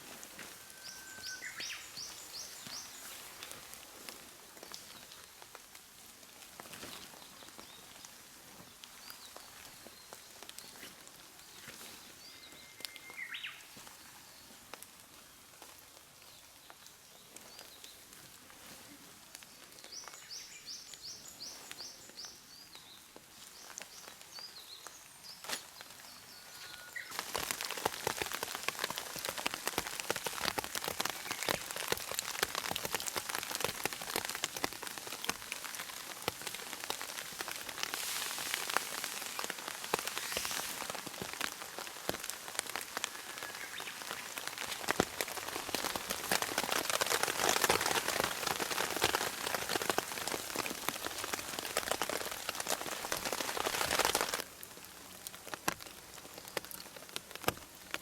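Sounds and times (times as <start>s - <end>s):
rain in a forest: 0.0s - 58.0s
birds chirping: 0.6s - 3.2s.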